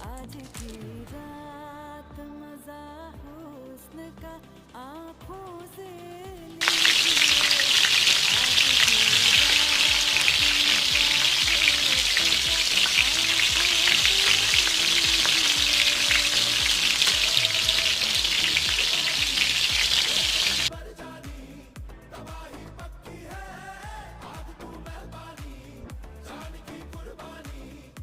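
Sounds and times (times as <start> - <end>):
fries sizzling in hot oil: 6.6 - 20.7.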